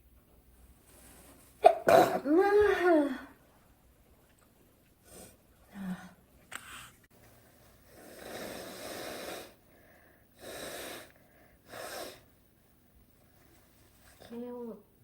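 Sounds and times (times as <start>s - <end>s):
woman blowing her nose: 8.0s - 9.6s, 11.7s - 12.3s.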